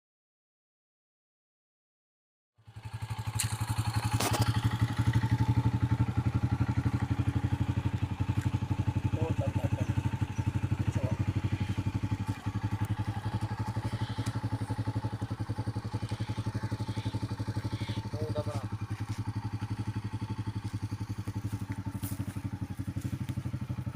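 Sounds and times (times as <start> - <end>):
engine running steadily: 2.7 - 23.9.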